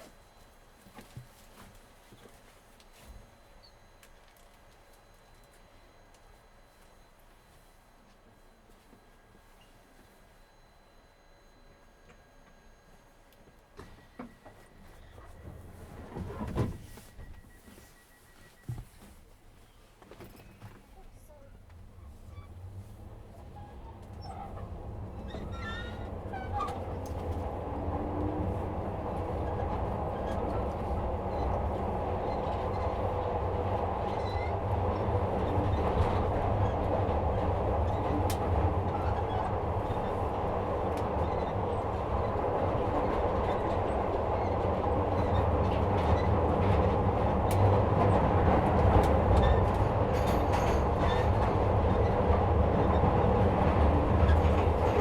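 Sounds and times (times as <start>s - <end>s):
train interior hum: 0.0s - 55.0s
wheel and track rumble: 21.6s - 55.0s.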